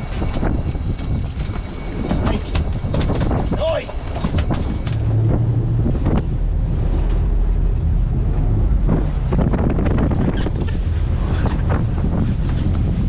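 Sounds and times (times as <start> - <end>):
boat engine rumble: 0.0 - 13.0
wind buffeting microphone: 0.0 - 13.0
rushing water: 3.7 - 13.0.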